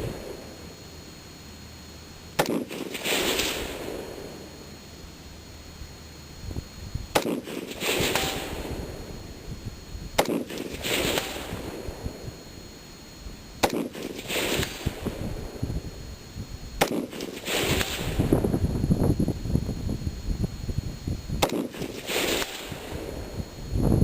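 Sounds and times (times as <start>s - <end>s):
rifle shots: 2.4s - 4.3s, 7.1s - 8.9s, 10.2s - 11.9s, 13.6s - 15.2s, 16.8s - 18.3s, 21.4s - 23.2s
wind rumbling on microphone: 5.8s - 13.5s, 14.1s - 24.0s.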